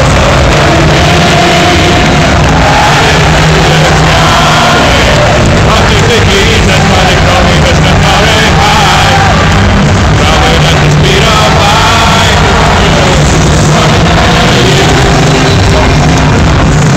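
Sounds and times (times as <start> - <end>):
crowd singing along and yelling: 0.0 - 16.9
loud rock music: 0.0 - 16.9.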